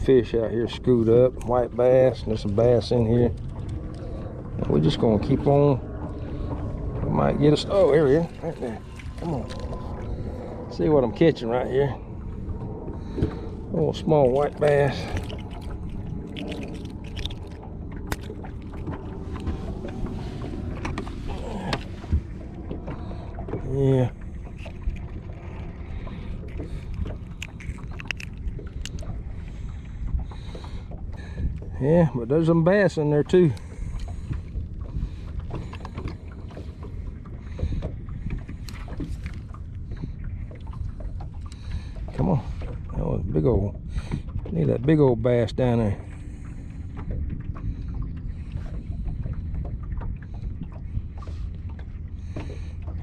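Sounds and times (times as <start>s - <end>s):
boat engine rumble: 0.0s - 53.0s
small knocks and clicks: 26.5s - 29.0s.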